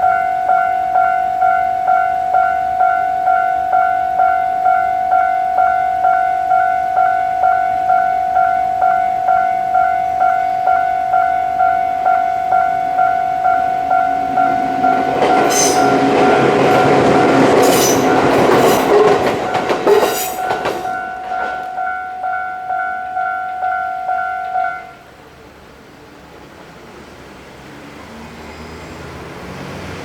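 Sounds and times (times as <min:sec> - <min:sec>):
level crossing warning bell: 0:00.0 - 0:25.2
train wheels clattering over rail joints: 0:14.4 - 0:21.8.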